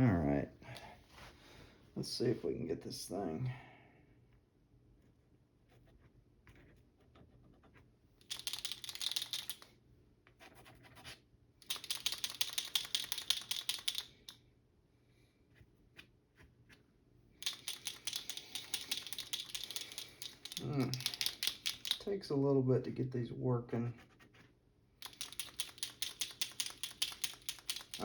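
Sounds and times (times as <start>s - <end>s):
paint pen ball rattling: 8.2s - 9.7s, 11.6s - 14.4s, 17.4s - 22.1s, 25.0s - 28.0s.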